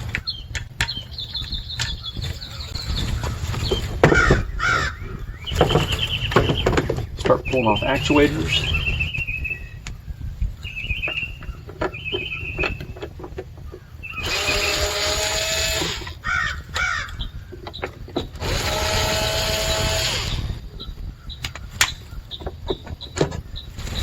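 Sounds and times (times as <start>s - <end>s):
birds chirping: 0.0s - 24.0s
power drill running: 14.1s - 16.2s, 18.4s - 20.6s.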